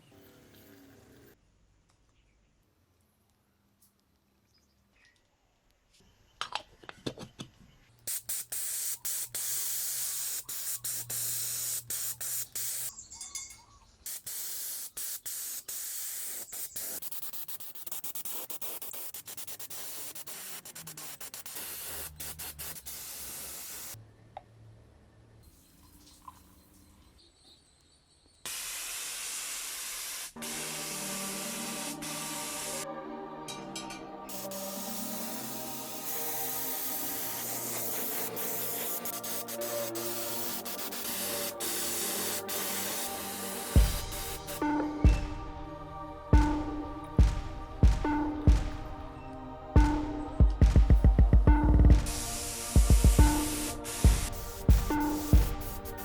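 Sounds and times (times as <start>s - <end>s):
paint spraying hiss: 8.1s - 13.0s, 14.1s - 24.0s, 28.5s - 32.8s, 34.3s - 45.5s, 51.9s - 56.0s
background music: 30.4s - 56.0s.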